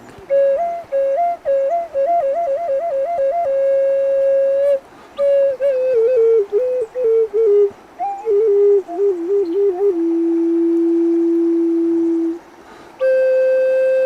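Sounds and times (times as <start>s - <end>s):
solo flute melody: 0.2s - 14.0s
flute player breath: 4.8s - 5.2s, 12.5s - 13.2s.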